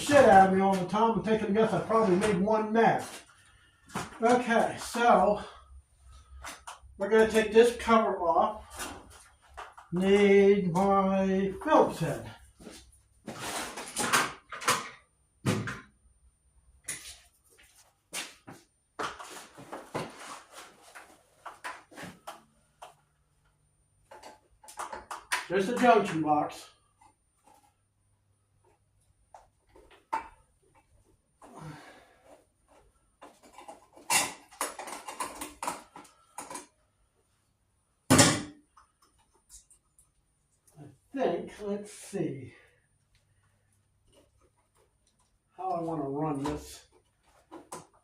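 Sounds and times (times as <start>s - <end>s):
small clicks and knocks: 21.4s - 26.2s.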